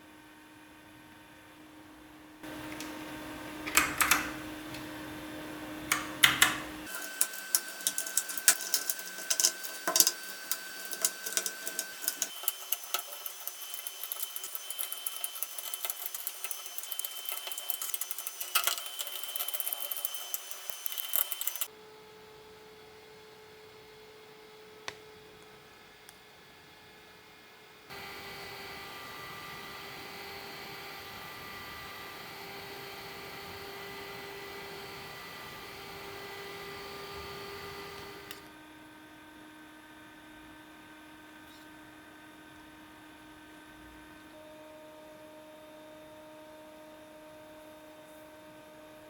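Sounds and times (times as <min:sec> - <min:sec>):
mechanical keyboard typing: 0:03.7 - 0:04.4, 0:05.9 - 0:21.7.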